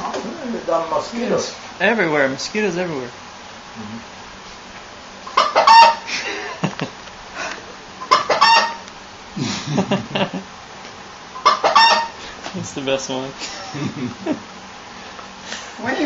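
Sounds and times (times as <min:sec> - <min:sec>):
chicken call sound effect: 0:05.4 - 0:06.1, 0:08.1 - 0:08.8, 0:11.4 - 0:12.2.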